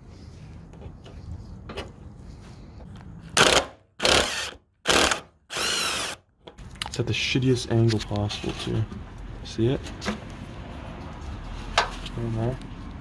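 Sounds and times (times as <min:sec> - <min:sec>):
handheld power tool bursts: 0:03.4 - 0:06.2.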